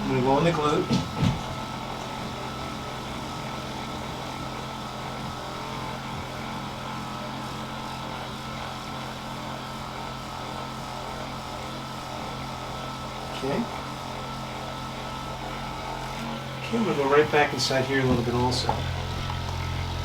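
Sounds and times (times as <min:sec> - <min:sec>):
electric massager humming: 0:00.0 - 0:20.0.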